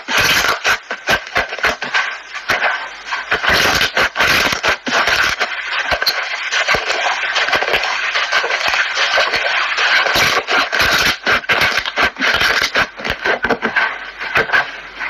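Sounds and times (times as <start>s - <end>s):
slime crackling and popping: 0.0s - 14.7s.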